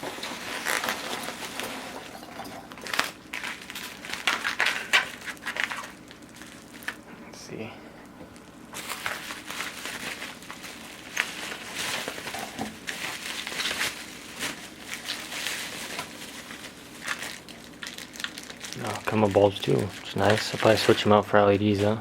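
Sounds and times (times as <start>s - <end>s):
plastic wrapping crinkling: 0.0s - 22.0s.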